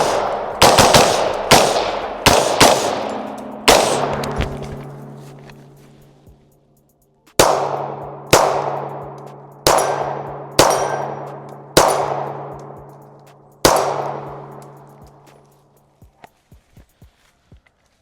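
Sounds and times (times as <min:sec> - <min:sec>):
gunshots: 0:00.0 - 0:05.2, 0:07.4 - 0:12.8, 0:13.6 - 0:14.6
steel target ringing: 0:00.0 - 0:06.1, 0:07.4 - 0:12.5.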